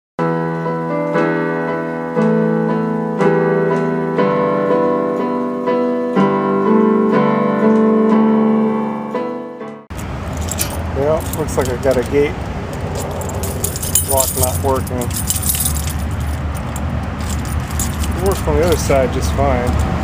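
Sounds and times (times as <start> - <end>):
electric piano chords: 0.2 - 11.0.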